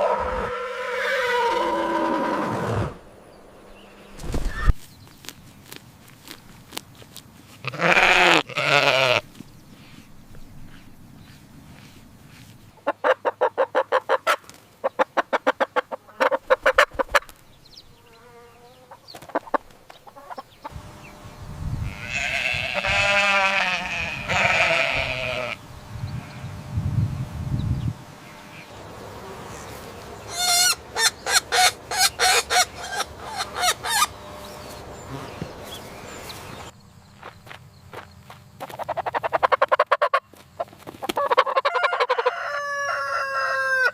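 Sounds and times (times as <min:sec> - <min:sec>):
drawn-out farm animal calls: 0:00.0 - 0:02.8, 0:07.6 - 0:10.0, 0:12.8 - 0:17.3, 0:21.8 - 0:26.6, 0:28.2 - 0:36.8, 0:38.7 - 0:43.9
chickens clucking: 0:12.8 - 0:17.4, 0:18.8 - 0:21.2, 0:28.3 - 0:36.8, 0:38.6 - 0:43.9.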